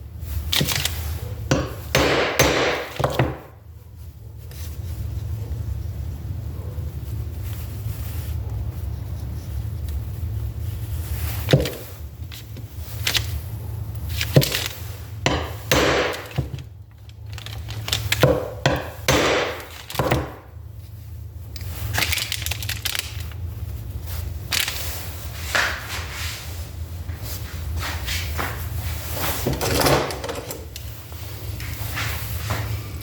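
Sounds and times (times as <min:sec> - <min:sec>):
steady low hum: 0:00.0 - 0:33.0
metal parts knocking and scraping: 0:14.1 - 0:20.4, 0:29.3 - 0:31.0.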